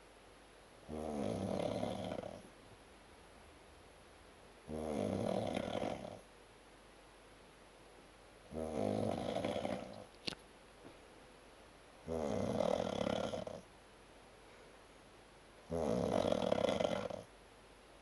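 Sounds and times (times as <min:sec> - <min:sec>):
man snoring: 0:00.9 - 0:02.4, 0:04.7 - 0:06.2, 0:08.5 - 0:10.0, 0:12.1 - 0:13.6, 0:15.7 - 0:17.3.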